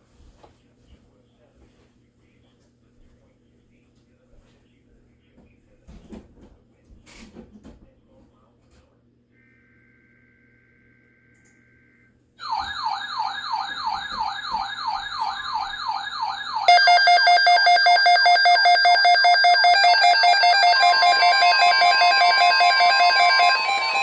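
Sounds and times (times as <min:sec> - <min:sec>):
pulsing electronic alarm: 0:09.4 - 0:24.0
rapid siren yelp: 0:12.4 - 0:24.0
steady alert tone: 0:16.5 - 0:24.0.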